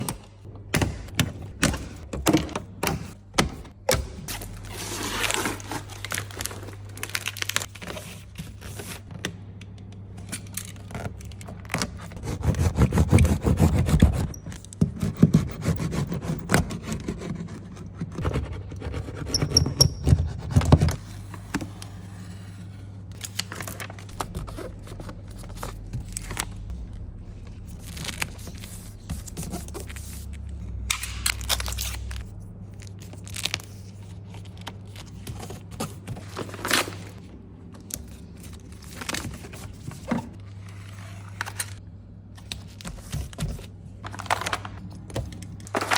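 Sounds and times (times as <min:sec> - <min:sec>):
low hum: 0:20.9 - 0:35.1.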